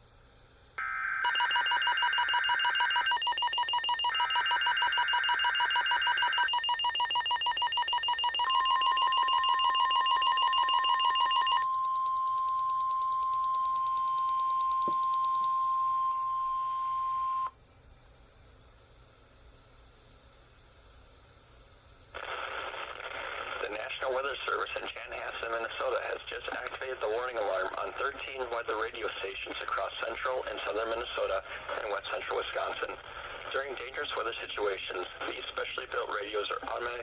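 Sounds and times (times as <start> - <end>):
steady warning alarm tone: 0.8 - 17.5
faint radio hiss: 17.8 - 37.0.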